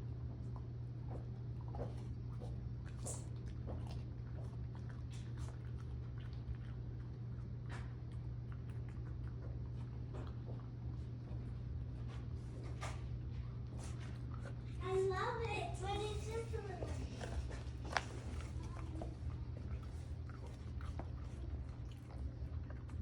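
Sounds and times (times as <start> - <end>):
steady low hum: 0.0 - 23.0
dog licking food: 0.4 - 23.0.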